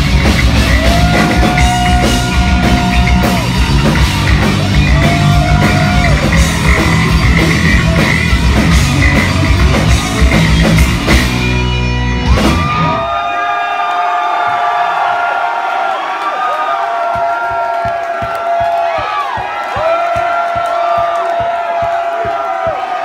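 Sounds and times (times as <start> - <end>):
drums and bass: 0.0 - 13.2, 17.1 - 23.0
electric guitar soloing: 0.0 - 13.4.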